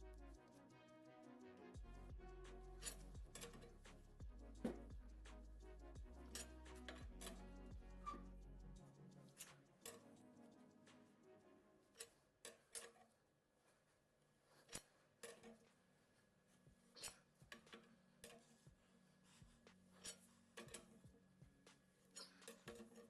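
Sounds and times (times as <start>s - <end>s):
quiet background music: 0.0s - 23.0s
tools clicking and knocking: 2.8s - 4.0s, 4.6s - 4.9s, 6.2s - 8.3s, 9.3s - 10.2s, 12.0s - 13.2s, 14.6s - 15.8s, 17.0s - 18.7s, 20.0s - 21.1s, 21.7s - 23.0s.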